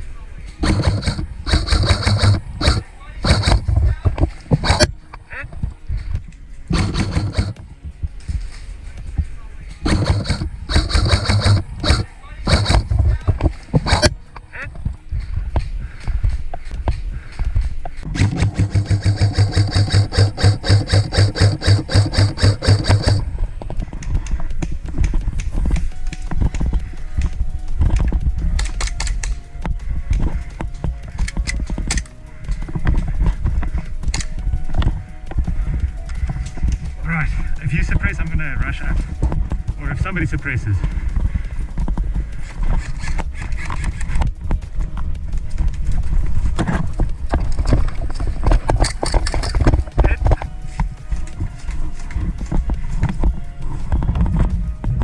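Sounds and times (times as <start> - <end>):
gear rattling: 0.5 - 5.0, 5.6 - 15.5, 17.6 - 55.0
footsteps running on stony ground: 14.8 - 55.0
wind rumble on microphone: 23.0 - 55.0
microphone handling noise: 38.9 - 55.0.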